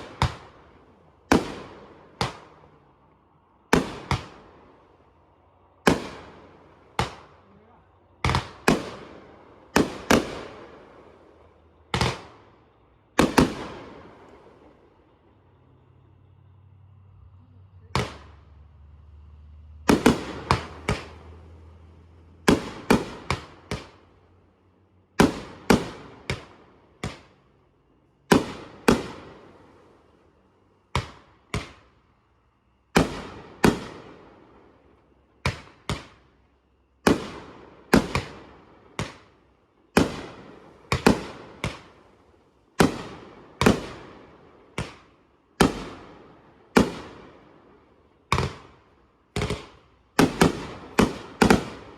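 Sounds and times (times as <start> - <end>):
fireworks exploding: 0.0 - 15.6, 17.8 - 18.6, 19.4 - 24.2, 25.1 - 27.6, 28.2 - 32.0, 32.8 - 36.4, 37.0 - 51.9.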